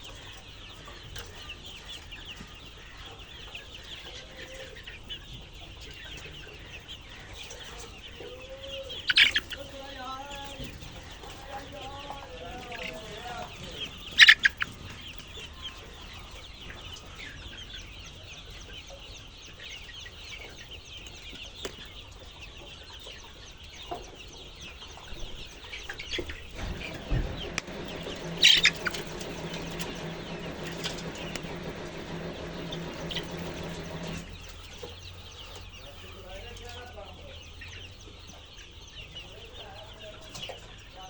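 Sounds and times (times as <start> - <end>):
chickens clucking and chirping: 0.0 - 41.0
wings flapping: 14.1 - 14.8, 26.5 - 34.6
steady mechanical hum: 25.9 - 36.7.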